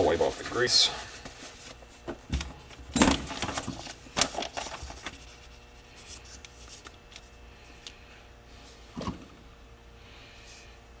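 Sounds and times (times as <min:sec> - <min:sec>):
paper towel rustling and rubbing: 0:00.0 - 0:02.1, 0:03.6 - 0:06.9.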